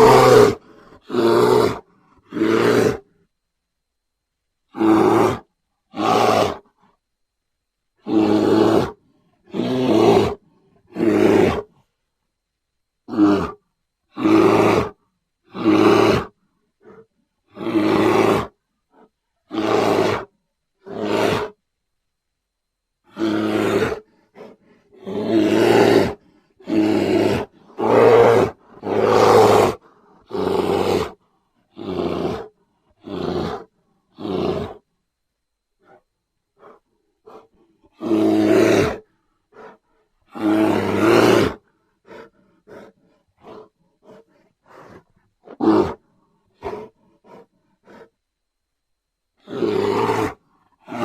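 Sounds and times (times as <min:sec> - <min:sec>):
bear calling: 0:00.0 - 0:03.1, 0:23.1 - 0:34.8, 0:36.6 - 0:46.0.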